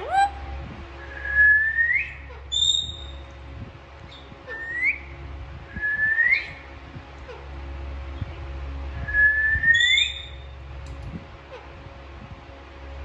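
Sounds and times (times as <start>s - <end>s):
steady low hum: 0.0s - 13.0s
parakeet whistling: 1.2s - 3.2s, 9.2s - 10.4s.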